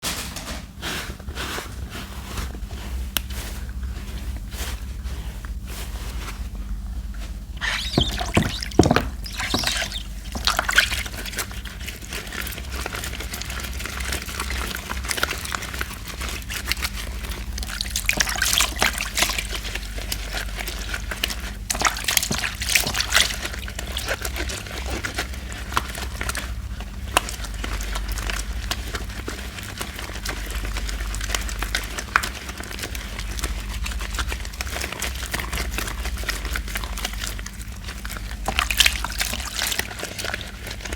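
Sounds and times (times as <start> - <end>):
wet squishing of soap lather: 0.8 - 40.9
water splashing: 7.6 - 11.1.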